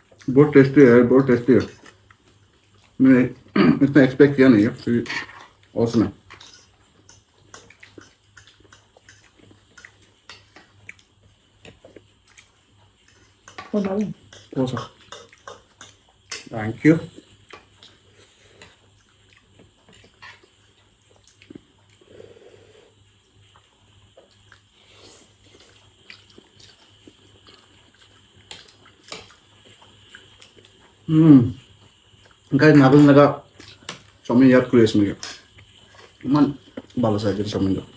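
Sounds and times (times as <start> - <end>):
person chewing food: 1.6 - 3.5, 5.2 - 16.5, 17.1 - 32.5.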